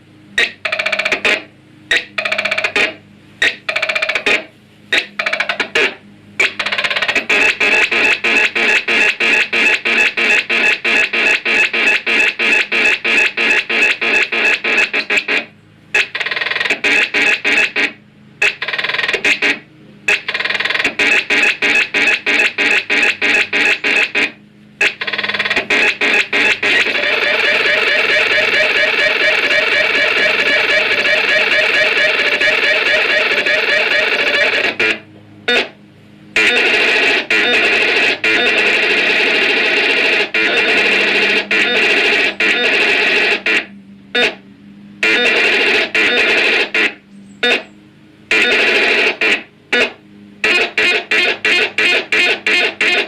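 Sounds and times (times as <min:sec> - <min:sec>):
synthesizer rippling pitched patch: 0:00.4 - 0:35.8.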